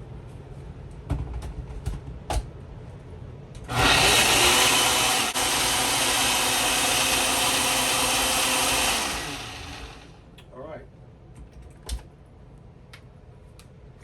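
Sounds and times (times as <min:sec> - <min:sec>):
blender running at high speed: 0:03.7 - 0:10.2.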